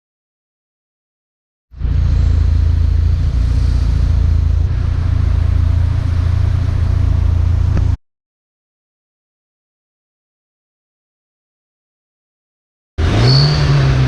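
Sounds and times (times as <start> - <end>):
car engine and exhaust running: 1.7 - 8.0, 13.0 - 14.0.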